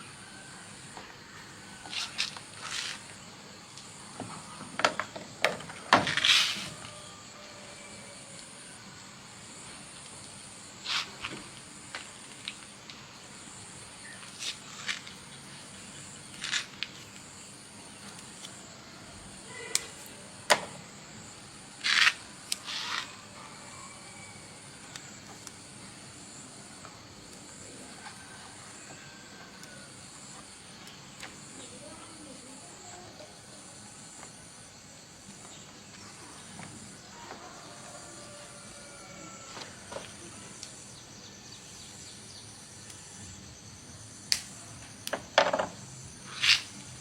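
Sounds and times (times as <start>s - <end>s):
steady background hiss: 0.0s - 47.0s.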